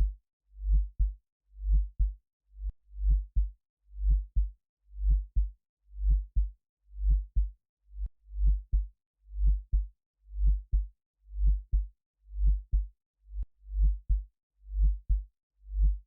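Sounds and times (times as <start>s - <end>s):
heartbeat: 0.7s - 1.1s, 1.7s - 2.2s, 3.1s - 3.5s, 4.1s - 4.5s, 5.1s - 5.5s, 6.1s - 6.5s, 7.1s - 7.5s, 8.4s - 12.9s, 13.8s - 14.2s, 14.8s - 15.2s, 15.8s - 16.0s.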